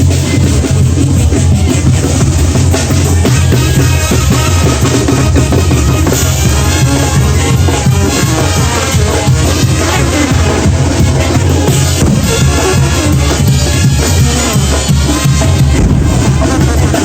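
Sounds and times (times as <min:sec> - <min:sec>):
brass bands playing: 0:00.0 - 0:17.0
bass drum and snare hits: 0:09.3 - 0:17.0.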